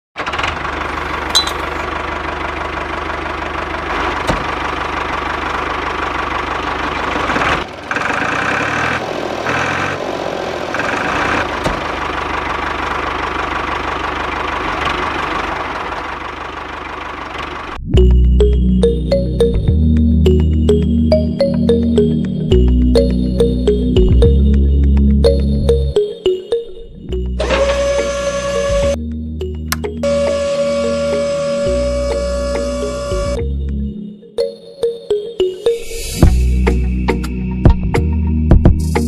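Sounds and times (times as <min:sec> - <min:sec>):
music: 0:17.8 - 0:39.0
small electric motors whirring: 0:27.4 - 0:29.0.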